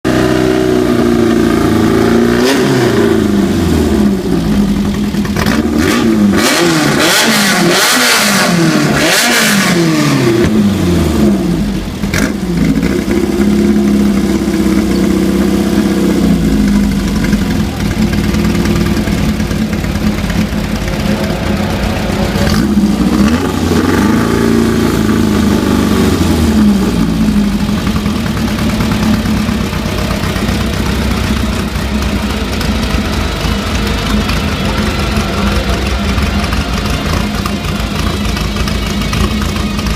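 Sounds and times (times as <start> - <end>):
buggy engine revving: 0.0 - 39.9
harsh noisy bursts: 28.2 - 39.9.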